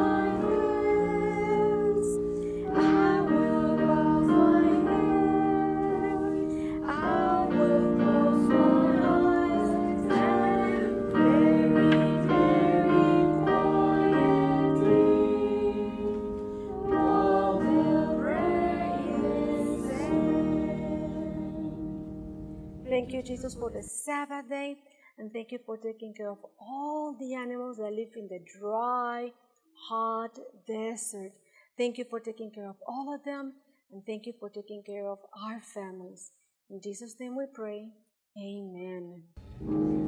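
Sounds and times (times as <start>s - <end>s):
woman singing: 0.0s - 16.2s, 16.8s - 21.9s
children singing: 0.0s - 22.0s
piano accompaniment: 0.0s - 23.9s, 39.4s - 40.0s.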